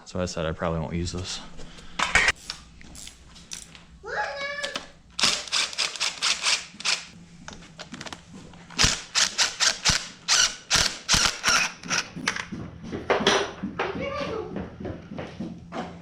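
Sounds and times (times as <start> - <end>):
hand tools clicking on metal: 4.7 - 7.2.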